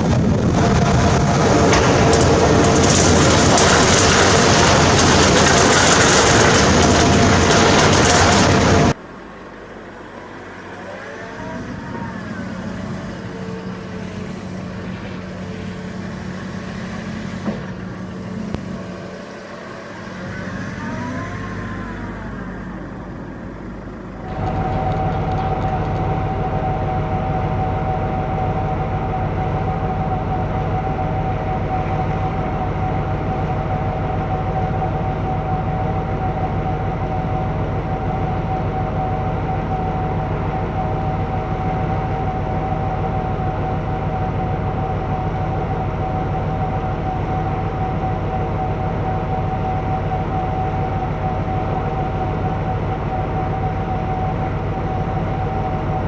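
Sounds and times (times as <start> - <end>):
diesel engine with whine: 0.0 - 56.0
steady engine drone: 0.0 - 56.0
steady high whine: 21.5 - 51.4.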